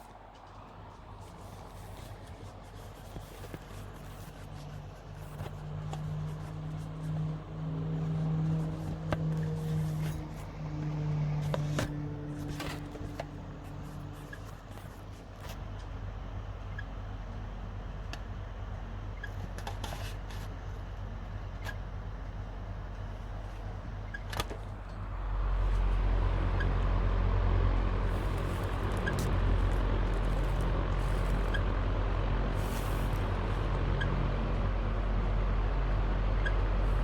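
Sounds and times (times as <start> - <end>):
fan low drone: 0.0 - 37.0.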